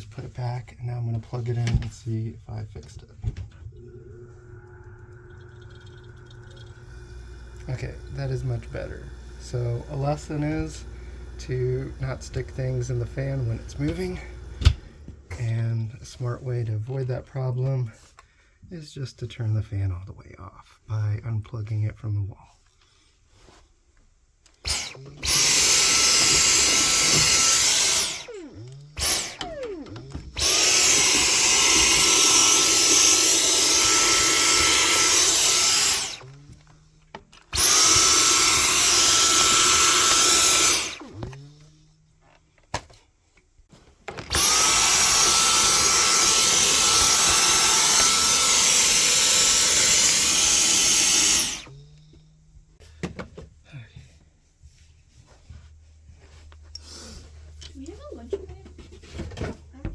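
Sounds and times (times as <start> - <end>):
vacuum cleaner whirring: 3.2 - 15.5, 24.5 - 43.0, 43.7 - 53.4.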